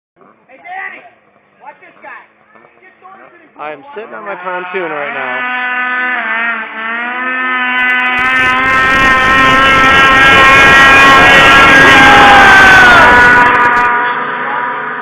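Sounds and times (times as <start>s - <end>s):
snowmobile engine running hard: 3.8s - 15.0s.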